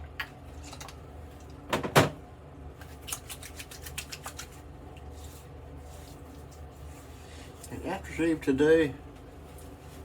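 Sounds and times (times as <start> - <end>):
hands patting skin: 2.8 - 4.6.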